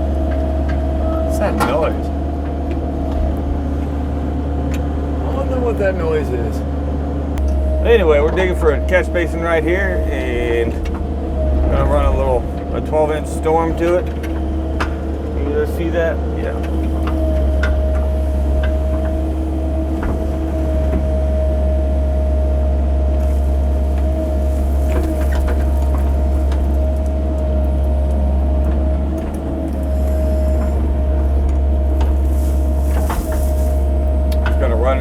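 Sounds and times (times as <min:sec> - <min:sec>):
diesel engine droning: 0:00.0 - 0:35.0
bucket knocking and scraping dirt: 0:23.1 - 0:35.0.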